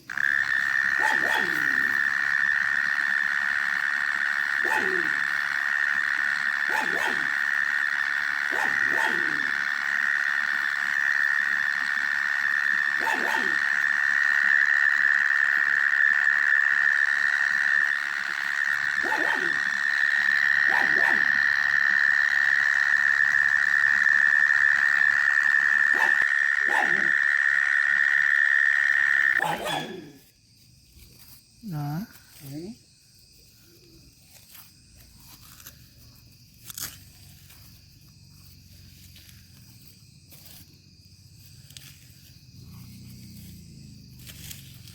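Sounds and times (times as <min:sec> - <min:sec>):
short falling calls: 0:00.1 - 0:30.2.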